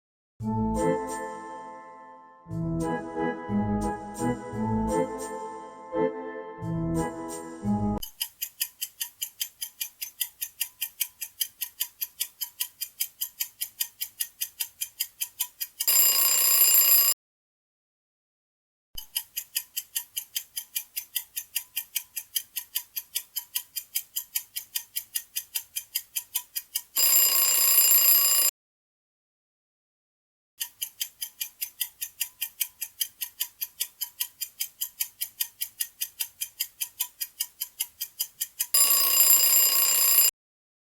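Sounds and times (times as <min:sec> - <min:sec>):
clock-like ticking: 0:08.0 - 0:16.4, 0:19.0 - 0:27.6, 0:30.6 - 0:40.1
loud alarm ring: 0:38.8 - 0:40.3.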